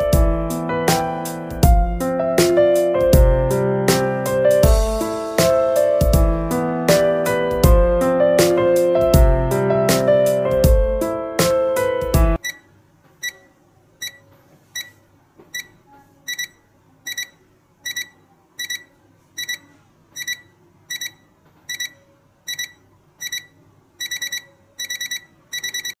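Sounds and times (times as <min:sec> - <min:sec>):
alarm clock beeping: 0:12.4 - 0:15.0, 0:15.6 - 0:26.0.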